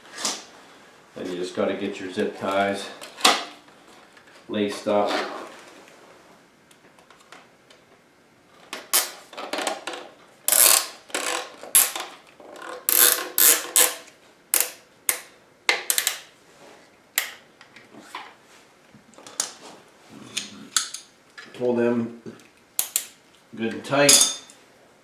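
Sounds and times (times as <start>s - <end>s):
zip ties ratcheting: 10.5s - 12.0s, 12.9s - 15.3s, 22.8s - 23.2s.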